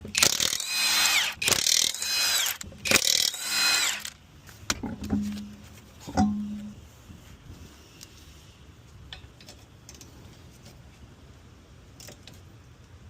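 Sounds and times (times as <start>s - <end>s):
power tool winding down: 0.2s - 4.2s.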